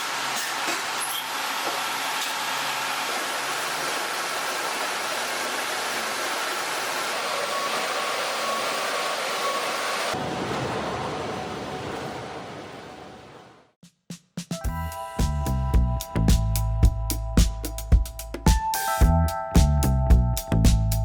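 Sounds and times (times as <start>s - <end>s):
woodworking machine whooshing: 0.0s - 12.0s.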